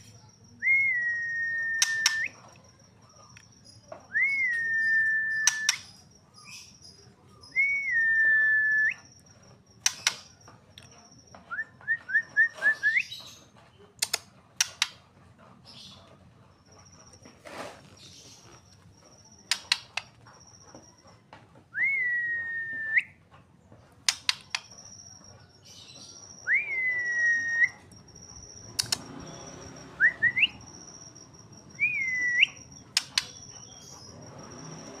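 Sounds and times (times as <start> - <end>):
bird whistled notes: 0.5 - 2.4, 4.1 - 6.0, 24.9 - 27.9, 28.8 - 30.6, 31.7 - 35.0.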